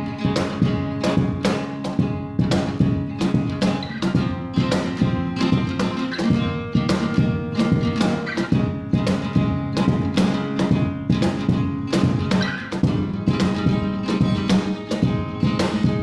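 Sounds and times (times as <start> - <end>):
acoustic guitar strumming: 0.0 - 16.0.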